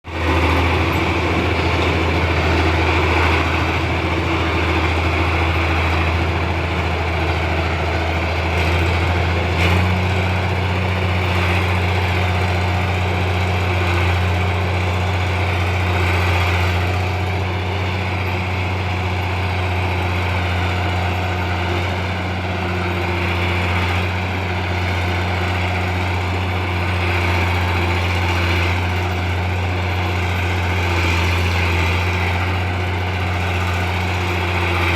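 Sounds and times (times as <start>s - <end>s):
bulldozer diesel engine running: 0.0s - 34.9s.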